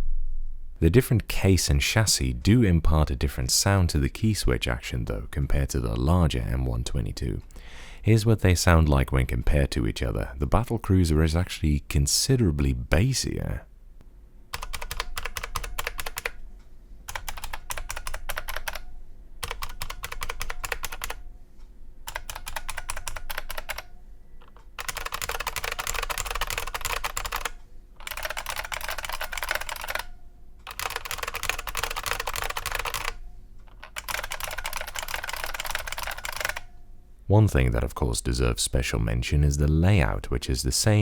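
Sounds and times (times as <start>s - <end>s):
mechanical keyboard typing: 14.6s - 16.4s, 17.1s - 21.2s, 22.1s - 36.7s.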